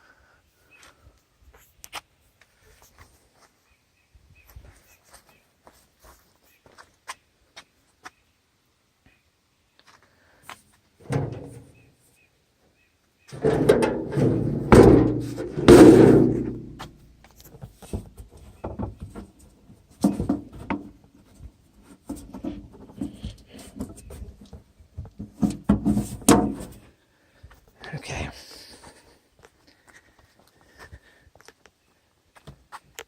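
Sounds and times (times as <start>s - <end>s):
mower panels clunking and rattling: 11.0s - 11.8s, 13.3s - 17.0s, 17.6s - 26.8s.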